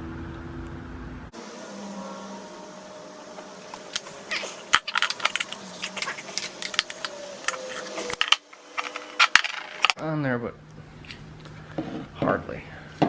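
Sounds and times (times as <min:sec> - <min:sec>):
small hard parts clicking and rattling: 0:03.8 - 0:10.0.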